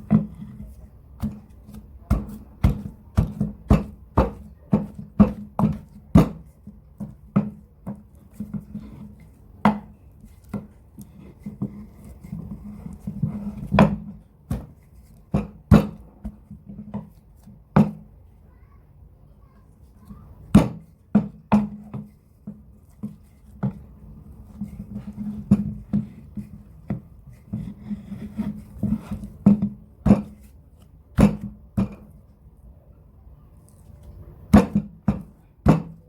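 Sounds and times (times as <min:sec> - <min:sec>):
pestle pounding thuds: 0:01.1 - 0:08.0, 0:09.6 - 0:09.9, 0:13.1 - 0:17.0, 0:17.7 - 0:18.0, 0:20.5 - 0:22.1, 0:31.1 - 0:32.1, 0:34.5 - 0:36.0.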